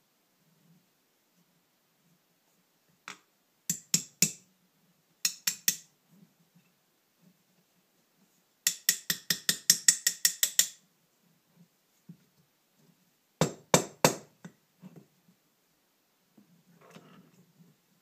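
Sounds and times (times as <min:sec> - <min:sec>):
ratchet tool clicking: 0:08.7 - 0:10.8.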